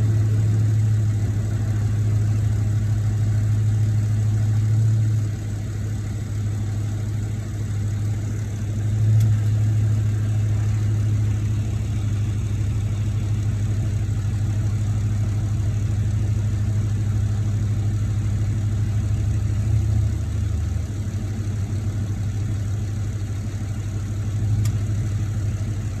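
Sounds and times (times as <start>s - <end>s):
car engine idling: 0.0s - 26.0s
engine click: 9.1s - 9.6s, 24.5s - 24.9s.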